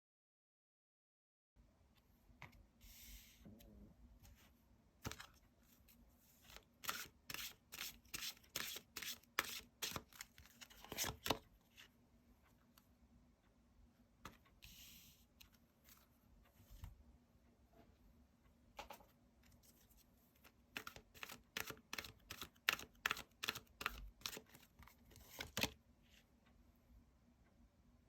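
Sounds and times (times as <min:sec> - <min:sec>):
cards rubbing together: 0:06.5 - 0:10.0
cards snapping and sliding: 0:06.8 - 0:11.4, 0:20.8 - 0:24.6.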